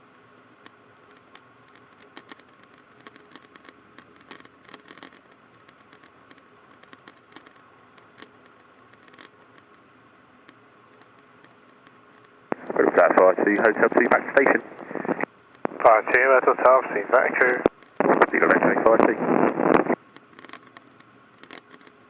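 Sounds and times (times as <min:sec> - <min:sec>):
faint steady hiss: 0:00.0 - 0:22.0
sharp clicks and crackles: 0:00.6 - 0:22.0
low hum: 0:12.5 - 0:20.0.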